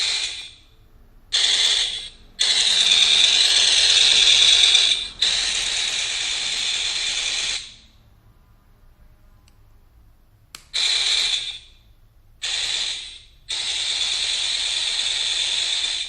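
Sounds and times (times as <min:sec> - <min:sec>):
electronic machine-gun firing: 0:00.0 - 0:00.6, 0:01.3 - 0:07.9, 0:10.8 - 0:11.8, 0:12.4 - 0:16.0.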